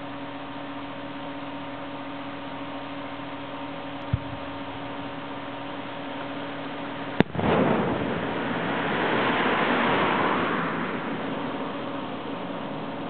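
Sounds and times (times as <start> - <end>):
rolling rumble: 4.0 - 13.0
firework bursting bang: 7.1 - 12.0
firework launch thump: 7.2 - 9.7.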